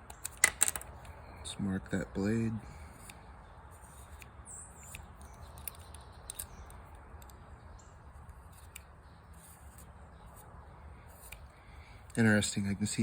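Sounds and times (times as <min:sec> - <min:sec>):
marker rubbing on blade: 0:08.4 - 0:11.5.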